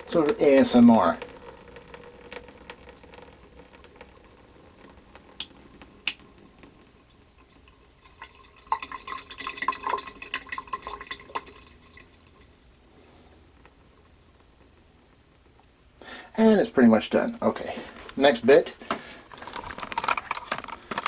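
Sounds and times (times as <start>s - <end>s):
water dripping from a tap: 0.0s - 16.5s.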